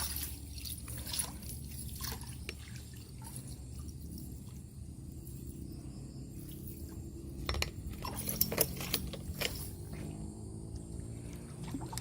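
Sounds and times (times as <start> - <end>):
low steady hum: 0.0 - 12.0
sharp clinks and knocks: 6.3 - 10.3.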